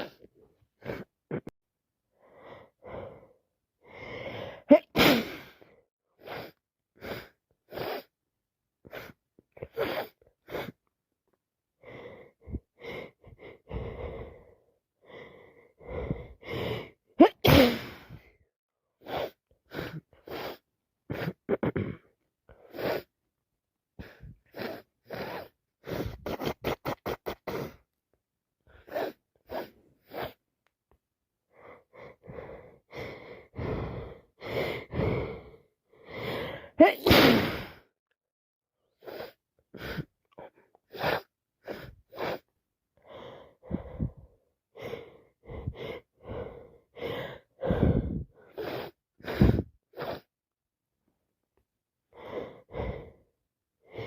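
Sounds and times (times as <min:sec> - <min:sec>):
short breaths and gasps: 0:02.1 - 0:08.1, 0:11.8 - 0:18.4, 0:24.0 - 0:27.9, 0:28.6 - 0:30.4, 0:31.5 - 0:37.9, 0:38.8 - 0:50.4, 0:52.1 - 0:54.0
person sneezing: 0:04.7 - 0:05.5, 0:17.2 - 0:18.1, 0:36.8 - 0:37.8.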